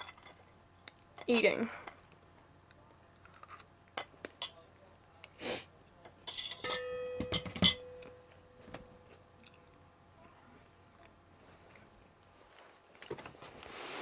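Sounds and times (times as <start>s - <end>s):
dishes and cutlery clinking: 6.2s - 9.8s
rustle: 12.4s - 14.0s.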